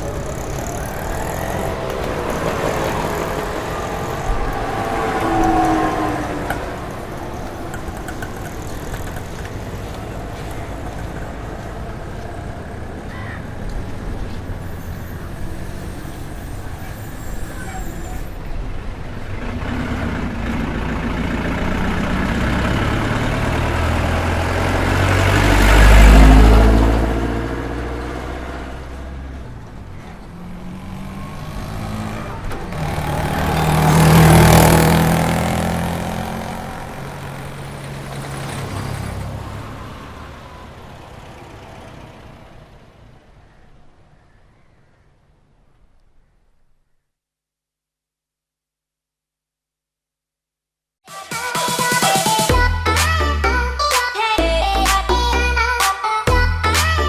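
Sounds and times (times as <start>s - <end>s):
vehicle passing close by: 0.0s - 16.4s, 18.6s - 44.0s
traffic hum: 0.0s - 47.0s.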